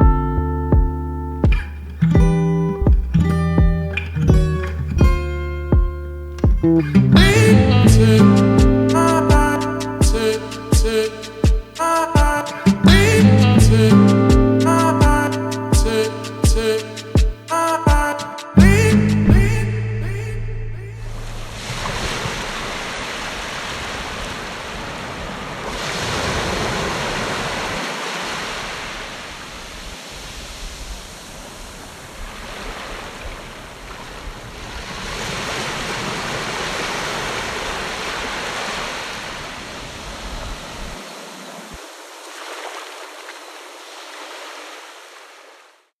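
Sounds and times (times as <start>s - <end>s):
sea waves washing onto shore: 8.3s - 13.1s, 21.5s - 45.8s.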